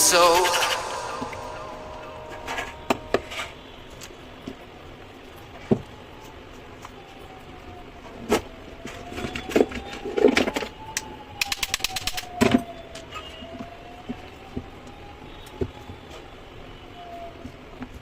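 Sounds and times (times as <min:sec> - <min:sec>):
faint wavering whine: 0:00.0 - 0:04.7.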